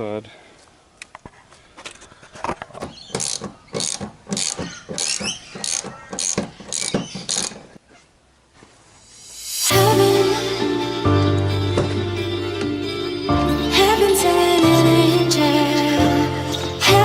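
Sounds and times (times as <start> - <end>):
ratchet wrench clicking: 3.2 - 7.6
music: 9.3 - 17.0.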